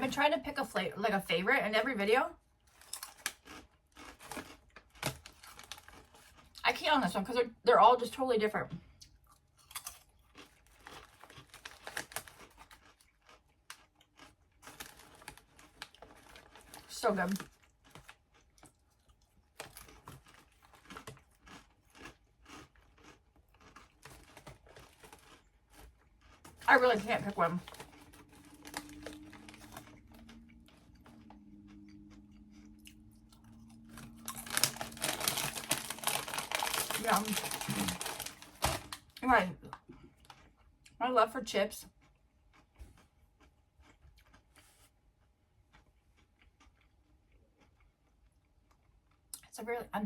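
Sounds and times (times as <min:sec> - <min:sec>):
crunching corn snacks: 0:02.6 - 0:06.6, 0:09.0 - 0:41.0, 0:41.9 - 0:49.5
snack bag crinkling: 0:02.6 - 0:06.6, 0:09.3 - 0:39.3.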